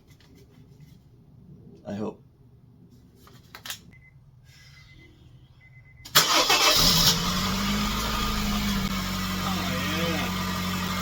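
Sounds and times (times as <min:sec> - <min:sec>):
car engine cranking and idling: 0:06.1 - 0:11.0.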